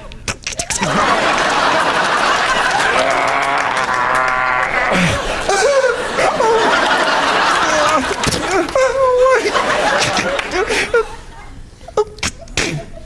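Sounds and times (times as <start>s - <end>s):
audience laughing: 0.7s - 11.6s
audience clapping: 0.8s - 5.3s, 6.3s - 8.9s, 9.8s - 10.6s
man making vocal sound effects: 2.9s - 5.2s.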